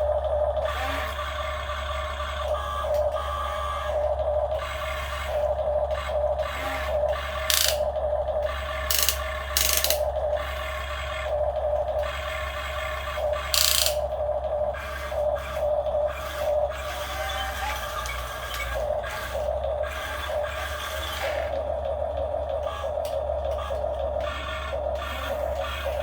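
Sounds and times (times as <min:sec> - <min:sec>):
small electric motors whining: 0:00.0 - 0:26.0
steady low hum: 0:00.0 - 0:26.0.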